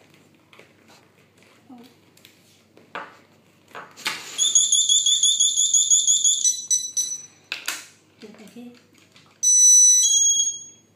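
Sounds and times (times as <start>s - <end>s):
alarm tag shrill pulsing beeps: 4.4s - 7.4s.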